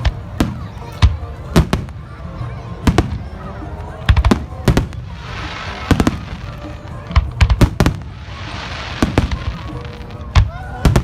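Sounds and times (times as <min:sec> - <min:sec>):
fireworks bangs: 0:02.8 - 0:11.0
fireworks crackling hiss: 0:04.1 - 0:11.0.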